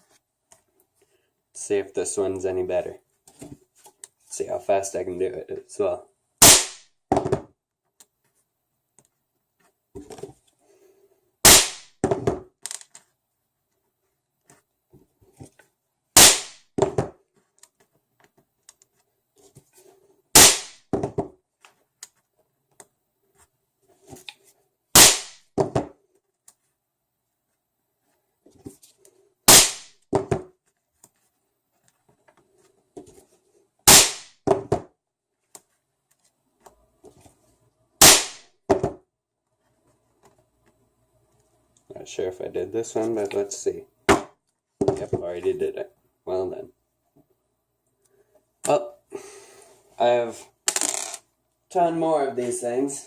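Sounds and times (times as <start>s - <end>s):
cap gun bangs: 20.4s - 20.8s, 25.0s - 25.4s.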